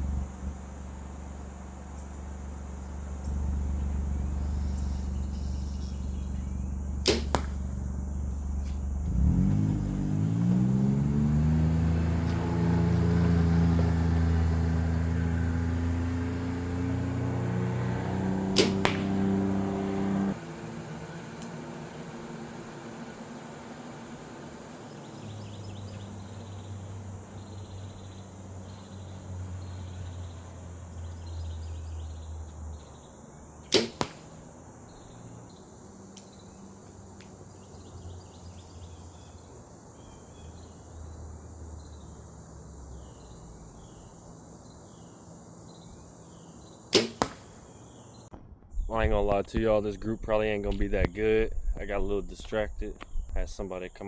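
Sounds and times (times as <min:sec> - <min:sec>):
faint low hum: 0:00.0 - 0:11.3
insects chirping: 0:00.0 - 0:54.0
arrow striking target: 0:07.0 - 0:07.8, 0:18.2 - 0:20.3, 0:33.7 - 0:34.4, 0:46.9 - 0:47.6
bowstring snap: 0:07.0 - 0:07.8, 0:18.3 - 0:19.7, 0:21.4 - 0:21.6, 0:33.7 - 0:34.4, 0:46.9 - 0:47.6.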